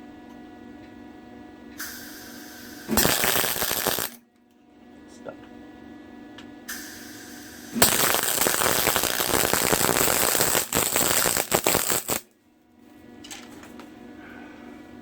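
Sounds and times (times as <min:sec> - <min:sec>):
electric welding arc crackling: 0:01.8 - 0:04.2, 0:06.8 - 0:12.3.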